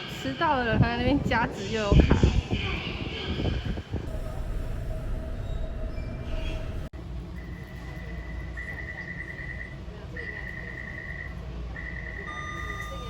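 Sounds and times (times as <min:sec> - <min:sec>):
train rumbling: 0:02.1 - 0:07.7
high electronic beeps: 0:04.1 - 0:06.9.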